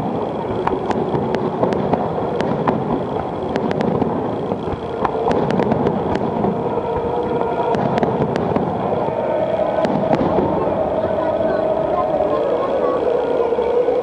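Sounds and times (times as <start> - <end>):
firework crackling pops: 0.0 - 11.6
low rumble of firework bursts: 0.0 - 14.0.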